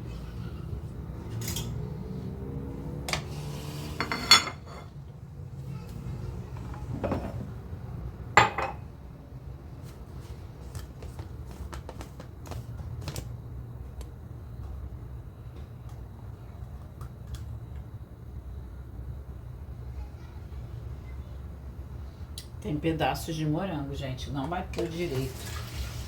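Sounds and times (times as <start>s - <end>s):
kitchenware clattering: 3.1s - 5.0s, 6.6s - 7.6s, 8.4s - 8.9s.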